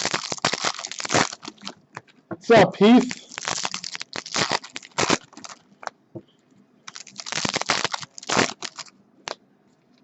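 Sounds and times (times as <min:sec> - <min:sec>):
foil wrappers crinkling: 0:00.0 - 0:02.1, 0:02.9 - 0:05.9, 0:06.9 - 0:09.4.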